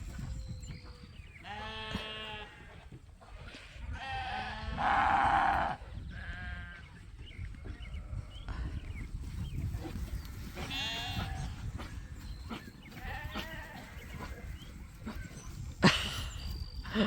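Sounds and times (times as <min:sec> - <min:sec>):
lambs bleating: 0:01.4 - 0:02.6, 0:04.0 - 0:06.8, 0:10.6 - 0:11.6, 0:13.0 - 0:14.4.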